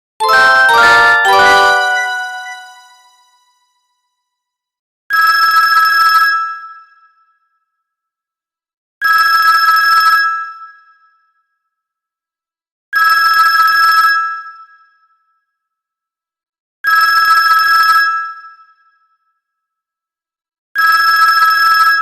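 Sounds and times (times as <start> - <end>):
buzzy two-tone phone ringtone: 0.2 - 2.9.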